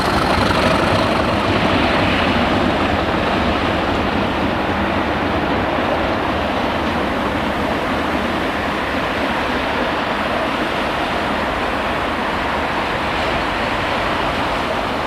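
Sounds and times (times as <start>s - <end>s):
freight train rolling past: 0.0s - 15.0s.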